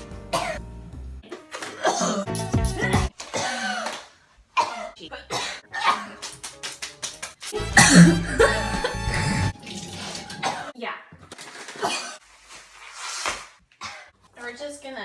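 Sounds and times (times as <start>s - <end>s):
background music: 0.0s - 3.7s, 4.6s - 10.7s
girl coughing: 0.3s - 0.6s, 1.7s - 2.3s, 3.3s - 3.9s, 4.6s - 6.2s, 7.6s - 8.6s, 11.8s - 12.2s.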